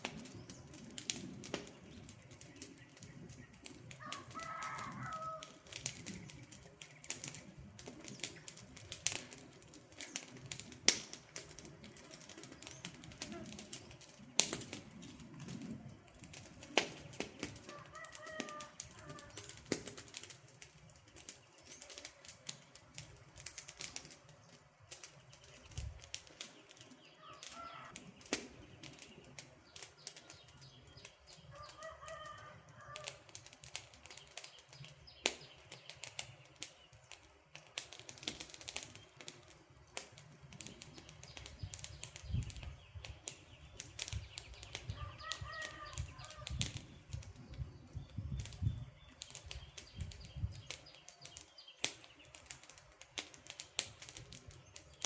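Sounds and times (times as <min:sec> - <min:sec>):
campfire crackling and popping: 0:00.0 - 0:55.0
faint bird calls: 0:27.1 - 0:28.2, 0:41.0 - 0:47.2.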